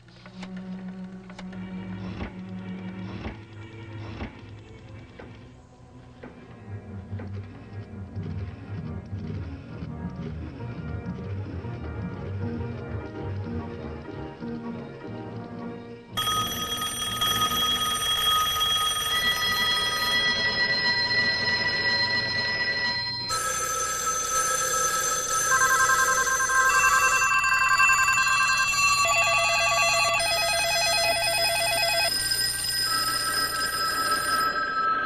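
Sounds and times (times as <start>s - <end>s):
telephones ringing: 16.2s - 35.0s.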